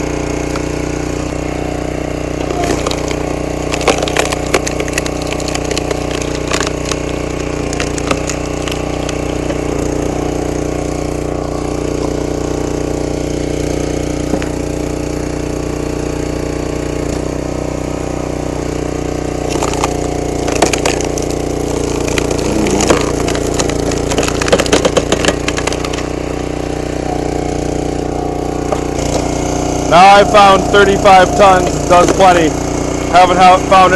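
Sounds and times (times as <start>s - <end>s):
log splitter engine running: 0.0s - 33.9s
wood cracking and splintering: 2.2s - 12.5s, 13.2s - 14.8s, 19.2s - 26.3s, 28.6s - 32.9s.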